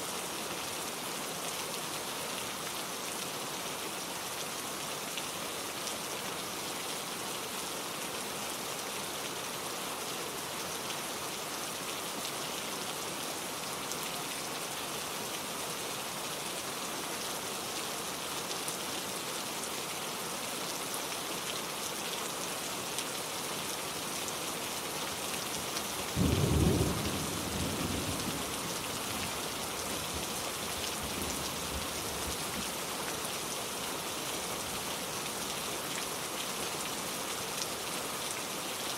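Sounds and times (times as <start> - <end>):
steady rain falling: 0.0 - 38.9
low rumble of thunder: 26.2 - 29.3.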